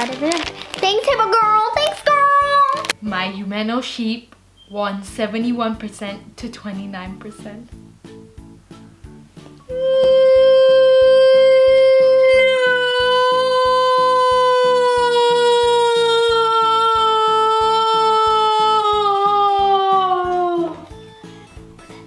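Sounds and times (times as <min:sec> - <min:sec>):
music with plucked beat: 0:05.8 - 0:12.5, 0:18.9 - 0:22.0.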